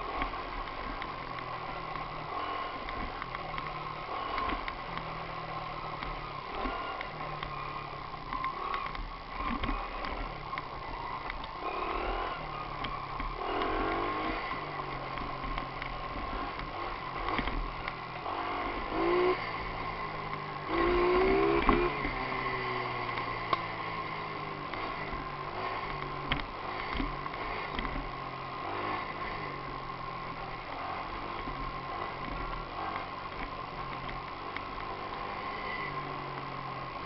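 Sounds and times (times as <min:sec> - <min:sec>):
pocket bike engine revving: 0:08.4 - 0:37.0.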